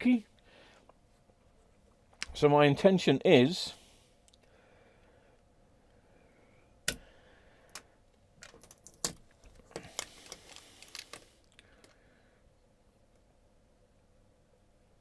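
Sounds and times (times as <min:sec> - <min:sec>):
small clicks of objects handled: 0:07.7 - 0:12.0.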